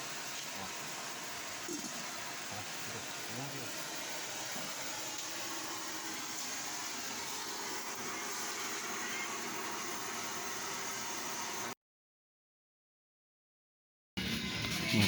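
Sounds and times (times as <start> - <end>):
steady hissing: 0.0 - 11.8.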